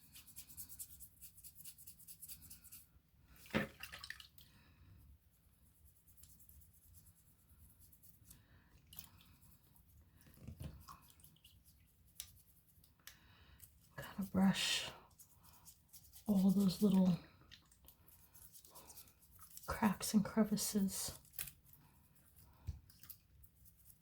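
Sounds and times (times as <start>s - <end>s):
small water sounds: 3.3s - 4.7s, 8.3s - 13.0s, 15.1s - 19.7s, 22.3s - 23.8s
knife handling ticks: 21.2s - 21.7s.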